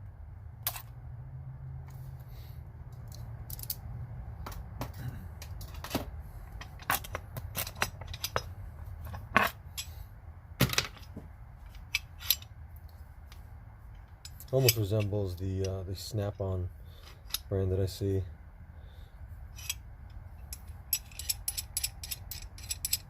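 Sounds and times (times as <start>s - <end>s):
low steady hum: 0.0s - 23.0s
pipe wrench clicking and knocking: 20.5s - 23.0s.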